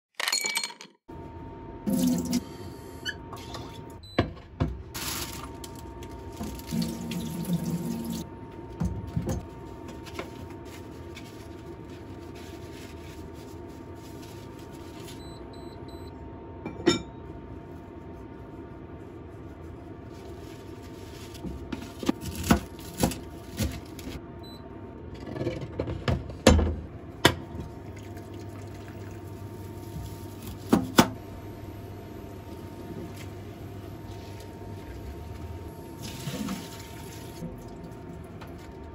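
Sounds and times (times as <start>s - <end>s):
water running from tap: 1.9s - 2.4s, 6.4s - 8.2s, 35.9s - 38.0s
faint steady hum: 26.5s - 38.9s.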